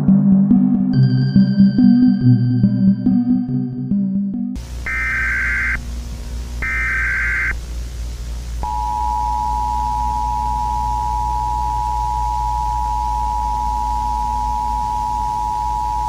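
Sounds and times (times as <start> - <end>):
low steady hum: 4.6 - 16.0
warbling data squawk: 4.9 - 5.8, 6.6 - 7.6.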